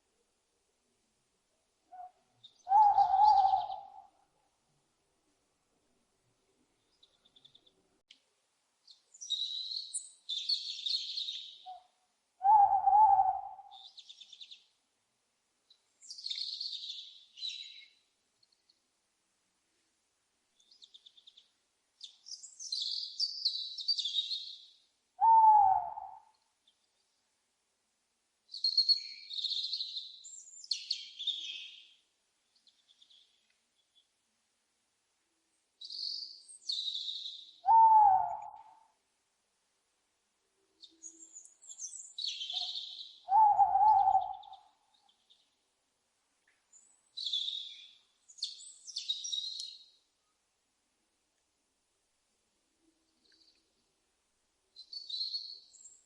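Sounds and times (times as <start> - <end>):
songbirds chirping: 0.0 - 56.0
owl hooting: 1.9 - 4.2, 11.6 - 13.9, 25.2 - 26.3, 37.6 - 38.9, 42.4 - 44.8.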